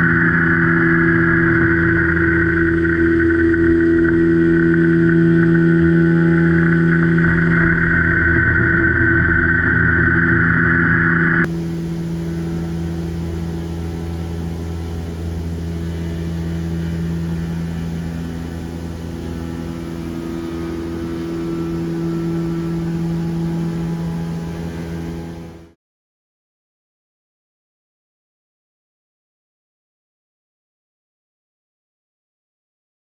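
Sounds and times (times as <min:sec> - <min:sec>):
high cutting whine: 0:00.0 - 0:25.7
milling machine hum: 0:11.4 - 0:25.7.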